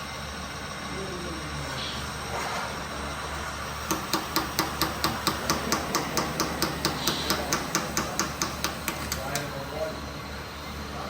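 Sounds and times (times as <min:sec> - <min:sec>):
rapid even hammering: 0:03.8 - 0:09.6.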